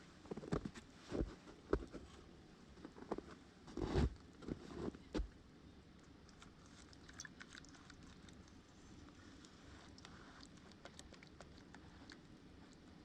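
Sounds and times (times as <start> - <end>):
soft crunching thumps: 2.8 - 5.4.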